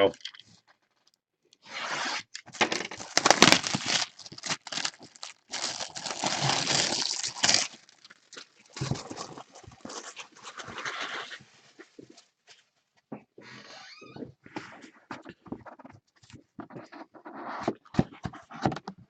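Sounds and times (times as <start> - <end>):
packaging rustling and crinkling: 2.5 - 11.4.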